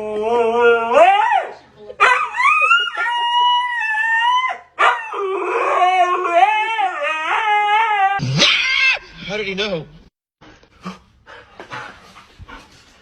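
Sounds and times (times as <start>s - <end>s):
dog howling: 0.0s - 9.2s.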